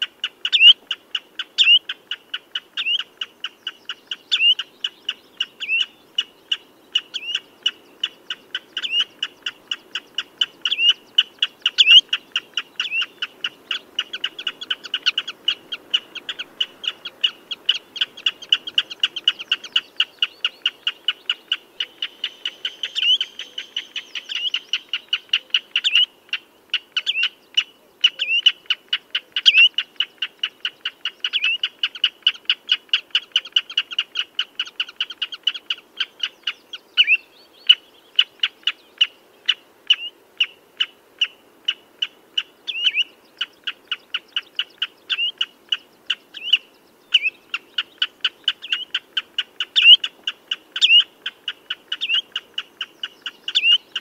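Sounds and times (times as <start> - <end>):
redshank calling: 0.3 - 26.1, 42.0 - 54.0.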